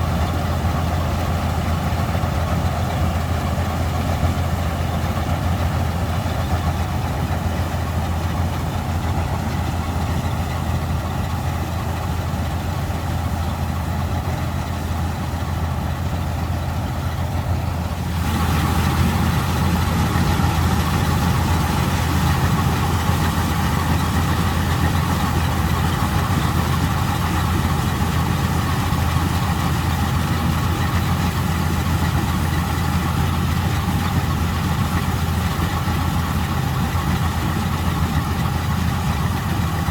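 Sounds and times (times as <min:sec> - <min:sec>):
combine harvester engine hum: 0:00.0 - 0:39.9
machinery clatter: 0:16.5 - 0:39.9.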